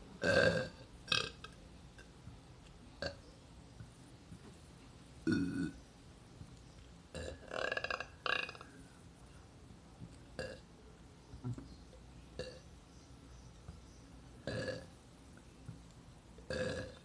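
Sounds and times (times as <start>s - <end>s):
boy burping: 16.5s - 17.0s.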